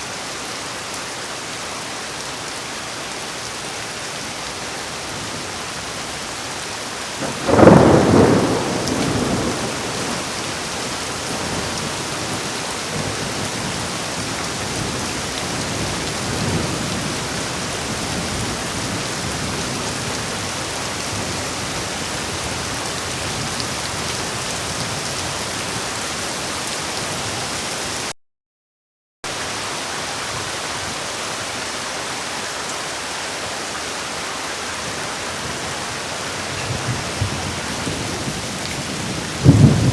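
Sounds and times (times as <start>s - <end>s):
heavy rain falling: 0.0s - 28.1s, 29.3s - 39.9s
thunderclap rumbling: 7.2s - 17.3s, 36.5s - 39.9s.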